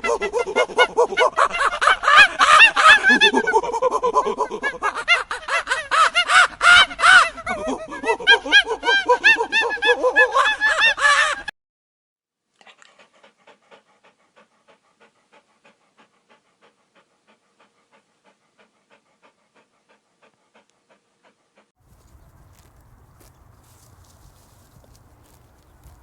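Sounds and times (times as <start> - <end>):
birds calling harshly: 21.9 - 26.0.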